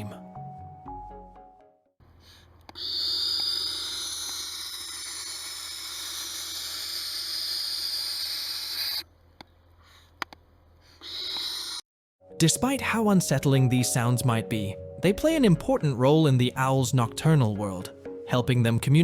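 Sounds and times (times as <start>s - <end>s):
owl hissing: 2.2s - 9.1s, 10.8s - 11.8s.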